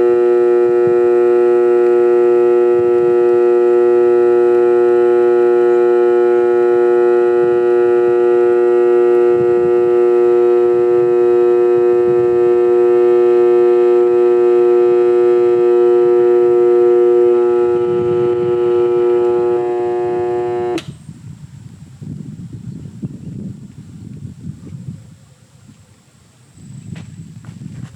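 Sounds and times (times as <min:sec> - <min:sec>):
vacuum cleaner motor whining: 0:00.0 - 0:21.0
switch click: 0:17.3 - 0:21.0.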